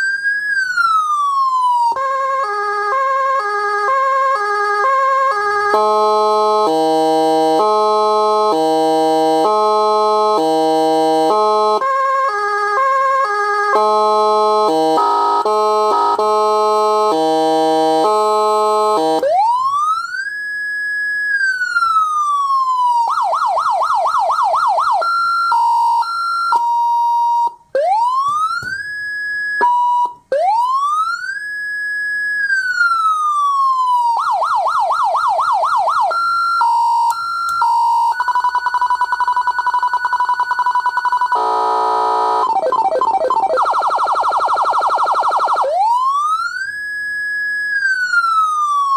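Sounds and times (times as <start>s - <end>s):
electronic siren switching tones: 0.0s - 48.9s.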